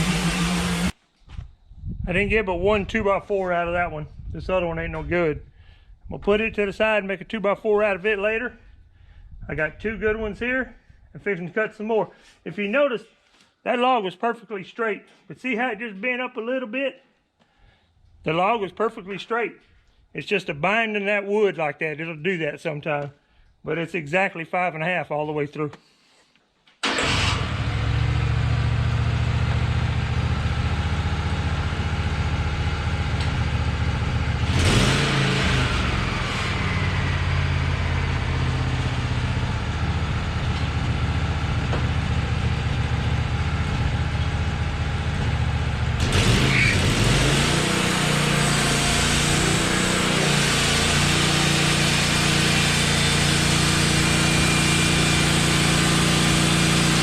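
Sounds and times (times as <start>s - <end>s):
sawmill engine droning: 0.0s - 1.0s, 26.8s - 57.0s.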